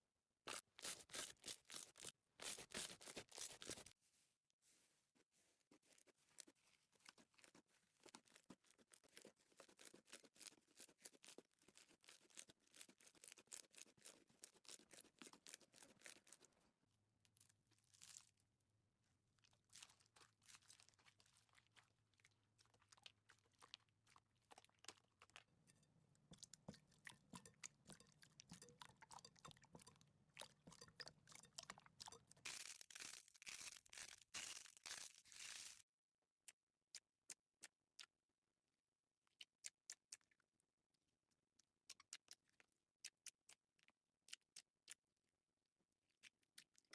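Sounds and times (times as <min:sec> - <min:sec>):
slime crackling and popping: 0:32.5 - 0:35.8.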